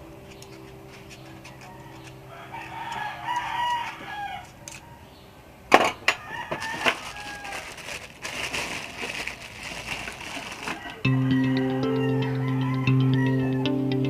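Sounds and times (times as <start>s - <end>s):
steady low hum: 0.0s - 4.1s
chicken clucking: 0.3s - 5.0s
rooster crowing: 1.0s - 5.1s, 6.0s - 7.9s, 10.4s - 13.8s.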